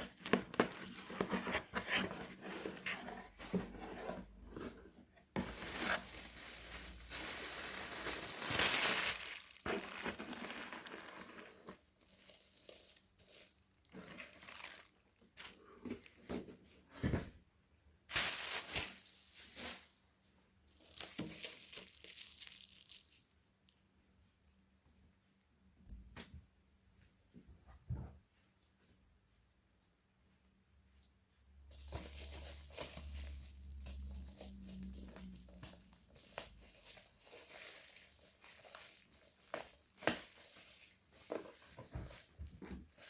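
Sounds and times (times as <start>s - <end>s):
wrapping crinkling and tearing: 5.4s - 16.2s, 18.1s - 20.0s, 20.7s - 23.8s, 31.7s - 43.0s.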